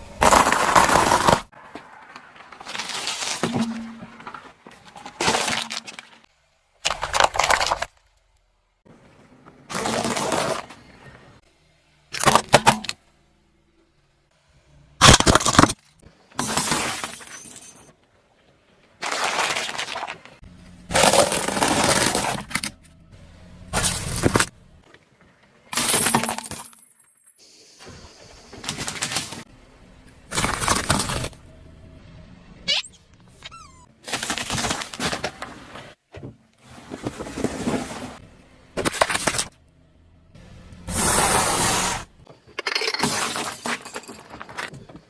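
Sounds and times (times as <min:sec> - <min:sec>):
objects crushed under car tyre: 0:00.2 - 0:08.0, 0:09.6 - 0:11.0, 0:15.0 - 0:17.5, 0:19.0 - 0:22.9, 0:23.7 - 0:24.6, 0:30.2 - 0:31.4, 0:40.9 - 0:45.0.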